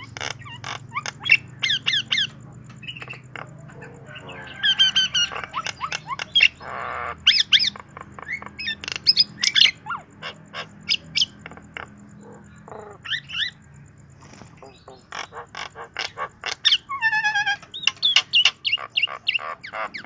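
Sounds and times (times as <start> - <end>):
bird harsh rasping squawk: 4.1 - 7.7.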